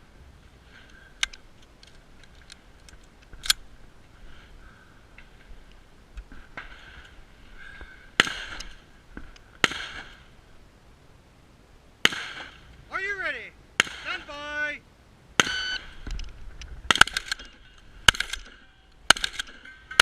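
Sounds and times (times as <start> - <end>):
small clicks: 0.8 - 3.6
faint sharp cracks: 5.2 - 10.3, 15.4 - 20.0
shotgun shots: 8.2 - 8.8, 9.6 - 10.3, 12.0 - 12.7, 13.8 - 14.4, 15.4 - 16.0, 16.9 - 20.0.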